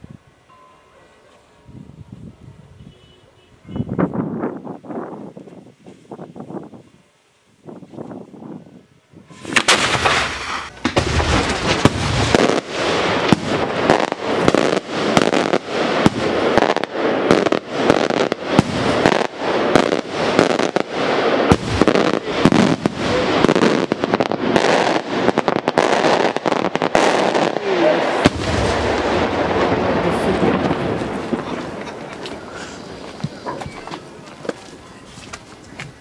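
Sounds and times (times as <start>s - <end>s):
fireworks banging and crackling: 9.2s - 36.0s.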